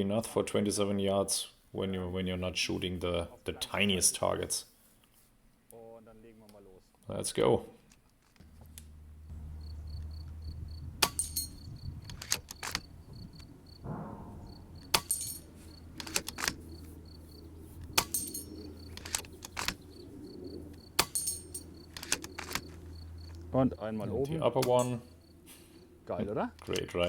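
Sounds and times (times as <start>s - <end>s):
low wind rumble: 8.4s - 26.6s
crickets chirping: 9.2s - 27.0s
air rifle shots: 13.8s - 16.8s
rifle action cycling: 16.0s - 16.6s, 18.9s - 19.8s, 21.9s - 22.8s.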